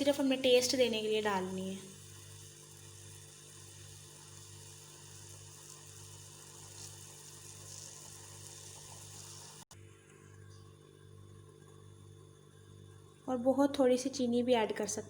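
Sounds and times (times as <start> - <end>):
water simmering in a saucepan: 0.0 - 10.3
low electrical hum: 0.0 - 15.0.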